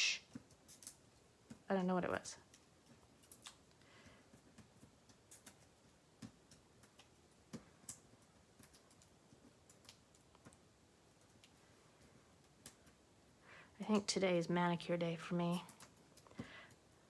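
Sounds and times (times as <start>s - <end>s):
light clicks and taps: 0.2s - 13.0s, 13.8s - 14.2s.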